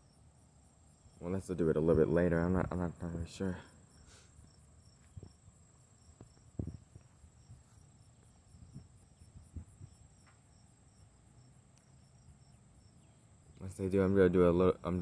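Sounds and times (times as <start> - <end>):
insects singing: 0.0 - 15.0
dull low thumps: 6.2 - 7.7, 8.5 - 10.0.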